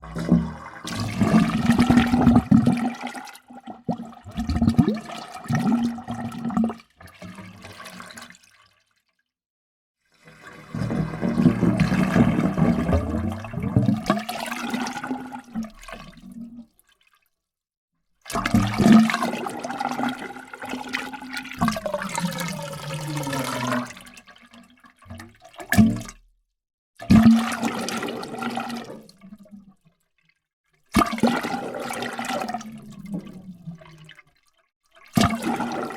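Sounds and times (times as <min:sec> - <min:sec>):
water gurgling: 0:00.0 - 0:06.7, 0:10.3 - 0:16.6, 0:18.3 - 0:24.3, 0:35.1 - 0:35.9.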